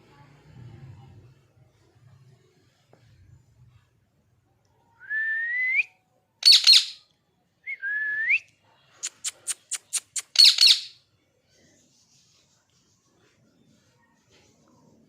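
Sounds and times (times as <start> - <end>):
parrot whistling: 5.1 - 7.0, 9.2 - 11.0
parrot squawking: 6.4 - 7.0, 9.0 - 11.0
parrot short sharp calls: 9.0 - 11.0.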